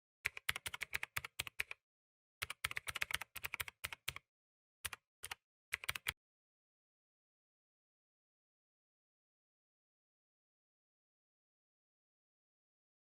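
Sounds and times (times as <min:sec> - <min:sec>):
typing on a keyboard: 0:00.3 - 0:01.8, 0:02.4 - 0:04.2, 0:04.8 - 0:06.2.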